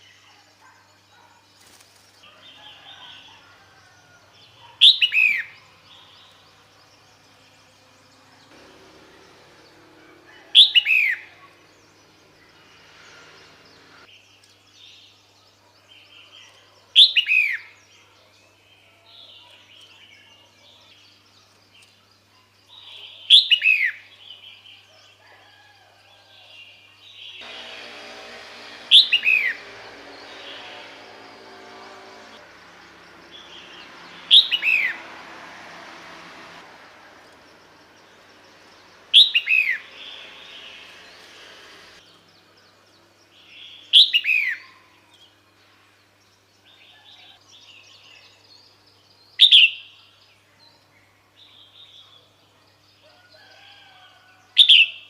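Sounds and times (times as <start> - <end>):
bird calling downward note: 27.4 - 32.5.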